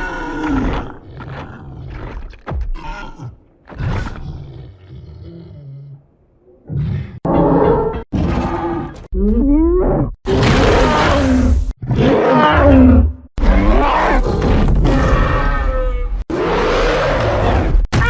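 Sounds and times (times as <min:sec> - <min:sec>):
roaring and grunting voices: 0:06.6 - 0:17.8.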